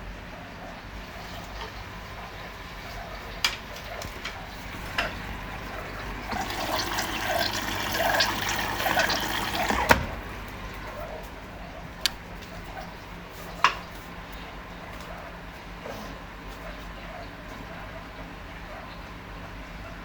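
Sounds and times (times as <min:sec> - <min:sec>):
water rushing into washing machine drum: 0:01.2 - 0:10.5.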